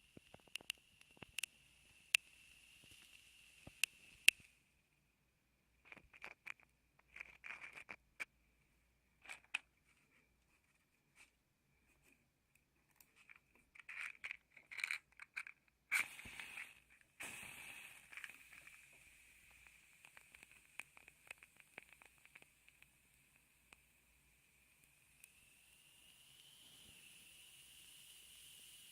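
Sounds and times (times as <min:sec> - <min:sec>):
hiss of burning match: 0:00.0 - 0:04.6, 0:15.9 - 0:28.9
matches being handled: 0:05.8 - 0:08.3, 0:09.2 - 0:10.1, 0:13.0 - 0:22.9
match being struck: 0:14.3 - 0:23.0.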